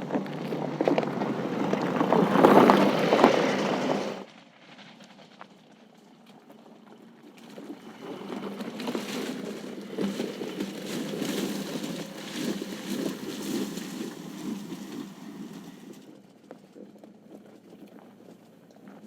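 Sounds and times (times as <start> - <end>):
car engine driving: 0.0 - 5.8, 7.1 - 16.1
tyres crackling on gravel: 0.0 - 19.0.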